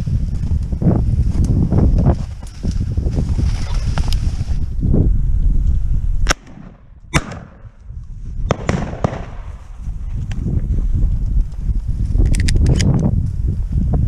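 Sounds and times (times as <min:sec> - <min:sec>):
wind buffeting microphone: 0:00.0 - 0:14.0
sharp clicks and pops: 0:11.2 - 0:13.3.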